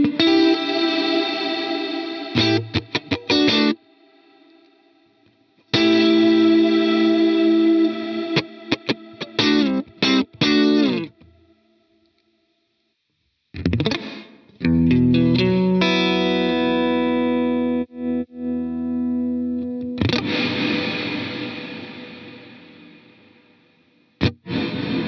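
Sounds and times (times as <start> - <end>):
electric guitar chords with reverb: 0.0 - 11.6, 13.6 - 25.0.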